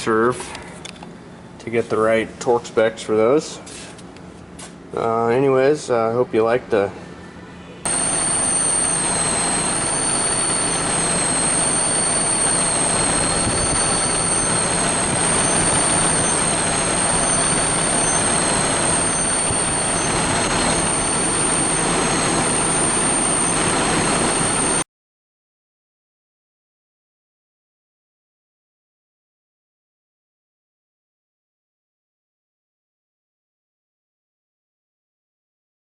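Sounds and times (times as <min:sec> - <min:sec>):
high wavering whine: 0:07.7 - 0:24.8
machine running: 0:07.9 - 0:24.8.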